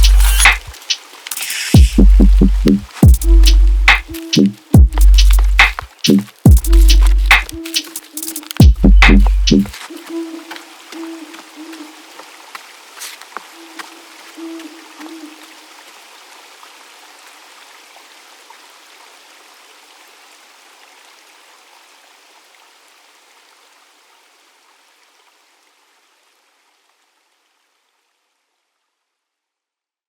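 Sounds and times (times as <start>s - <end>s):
water rushing: 0.0s - 21.8s.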